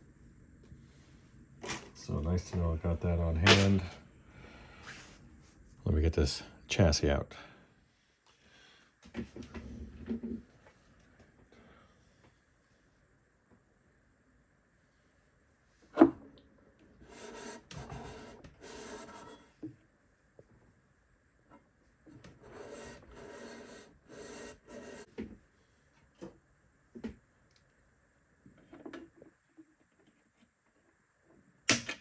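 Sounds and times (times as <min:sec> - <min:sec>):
metal scraping against wood: 0:17.0 - 0:19.5.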